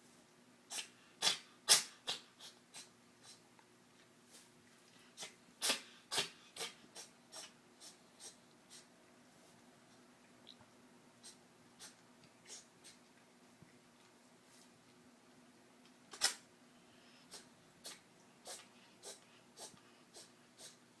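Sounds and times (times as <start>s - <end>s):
cat sneezing: 0.7s - 3.4s, 5.2s - 8.9s, 11.2s - 13.0s, 16.1s - 16.4s, 17.3s - 20.8s.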